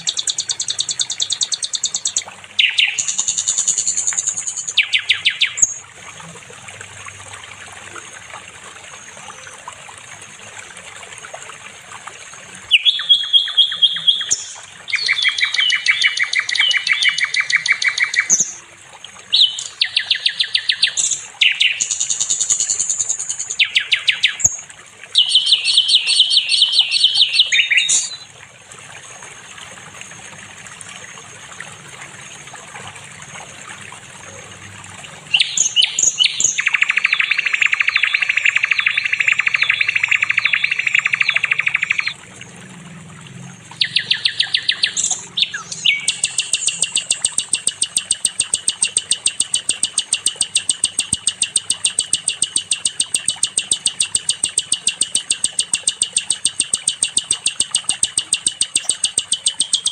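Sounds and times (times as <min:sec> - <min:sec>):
bird singing rapid high notes: 0:00.0 - 0:05.8, 0:12.7 - 0:18.6, 0:19.4 - 0:24.6, 0:25.2 - 0:28.3, 0:35.3 - 0:42.2, 0:43.8 - 0:59.9
running water hiss: 0:00.0 - 0:59.9.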